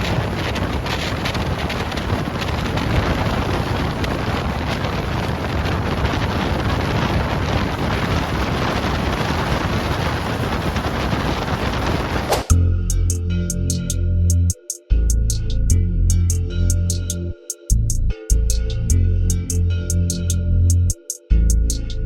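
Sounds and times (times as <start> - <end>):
wind blowing across microphone: 0.0 - 12.6.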